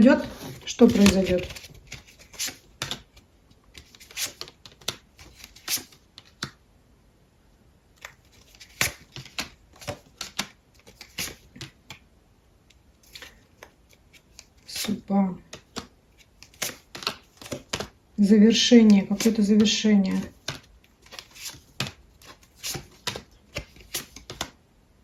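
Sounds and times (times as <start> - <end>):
cards snapping and rustling: 0.2 - 6.6, 8.0 - 12.0, 15.5 - 18.0, 18.8 - 24.6.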